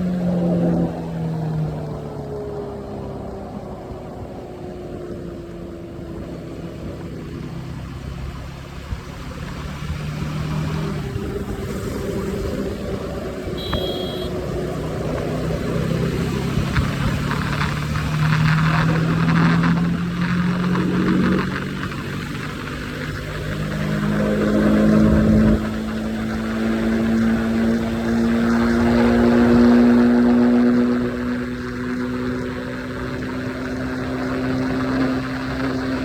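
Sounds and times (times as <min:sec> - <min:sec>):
motorcycle engine revving: 0:05.6 - 0:36.0
short high beep: 0:13.6 - 0:14.4.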